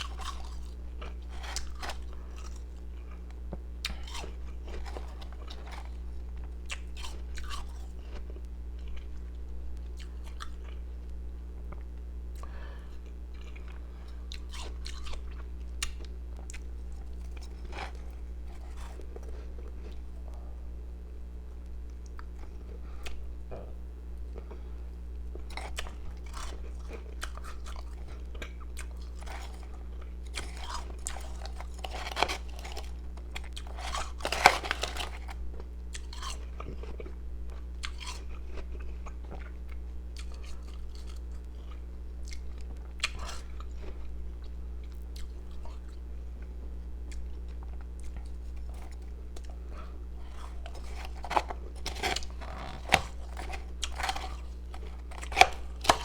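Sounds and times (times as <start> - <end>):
crunching ice: 0.0 - 3.1, 3.9 - 6.0, 16.9 - 20.0, 25.5 - 37.1, 50.2 - 56.0
low hum: 0.0 - 37.9.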